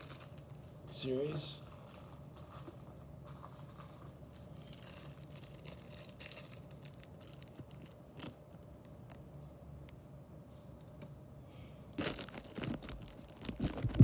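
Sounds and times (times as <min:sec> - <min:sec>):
toy cars handling crinkling: 0:00.0 - 0:00.7, 0:01.6 - 0:09.2, 0:12.0 - 0:14.0
steady low hum: 0:00.0 - 0:14.0.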